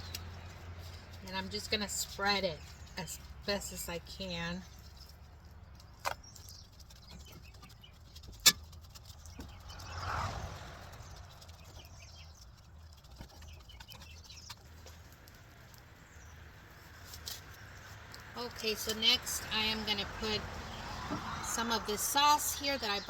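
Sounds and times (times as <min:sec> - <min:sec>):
road traffic rumble: 0:00.0 - 0:23.0
vehicle passing: 0:09.1 - 0:13.0, 0:14.7 - 0:23.0.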